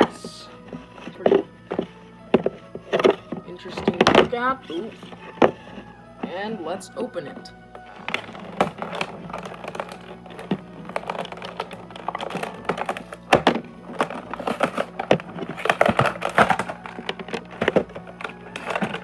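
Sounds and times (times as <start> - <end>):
packaging crinkles and clicks: 7.8 - 19.0.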